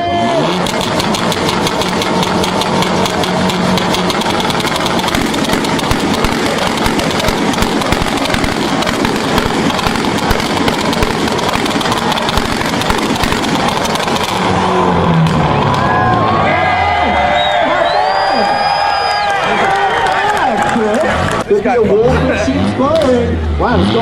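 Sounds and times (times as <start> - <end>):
car engine on launch limiter: 0.0 - 19.6, 20.4 - 24.0
exhaust popping and banging: 0.4 - 16.4.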